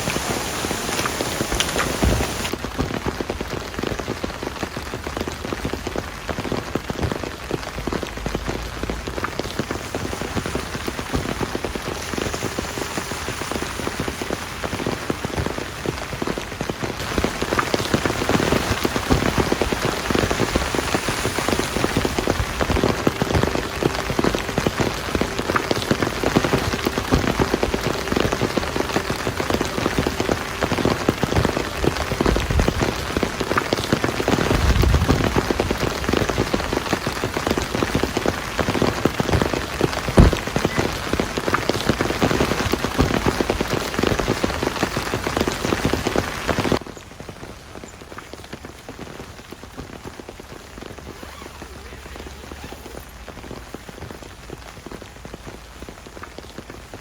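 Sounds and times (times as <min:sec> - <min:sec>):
heavy rain on hard surface: 0:00.0 - 0:57.0.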